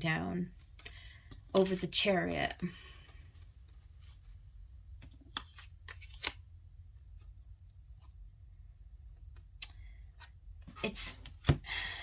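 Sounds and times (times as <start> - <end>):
low room hum: 0.0 - 12.0
cards flicking and tapping: 5.0 - 6.4.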